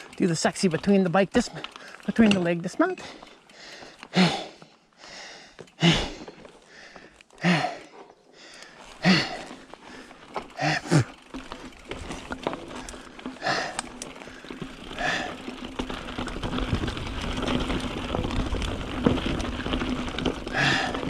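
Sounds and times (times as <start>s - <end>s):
bike clicks and rattles: 0.0s - 21.0s
tyres rushing on trail: 0.0s - 21.0s
person breathing hard: 3.0s - 11.2s, 12.7s - 15.5s, 20.5s - 21.0s.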